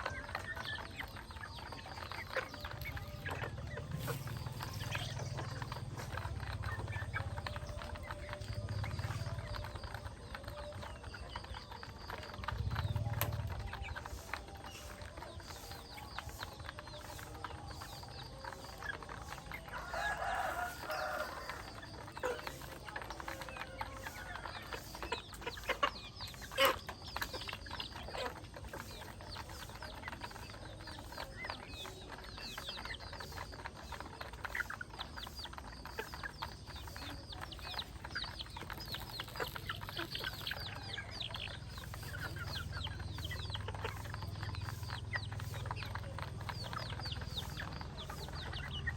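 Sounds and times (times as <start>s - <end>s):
chickens clucking: 0.0s - 48.9s
rooster crowing: 19.7s - 22.1s.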